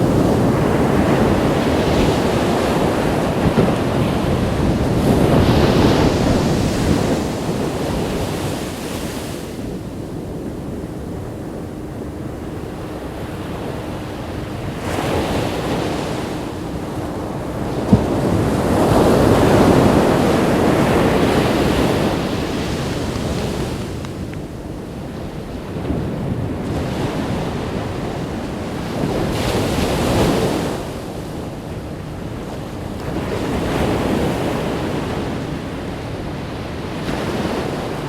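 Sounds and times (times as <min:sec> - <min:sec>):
ocean waves breaking: 0:00.0 - 0:38.0
wind buffeting microphone: 0:00.0 - 0:38.0.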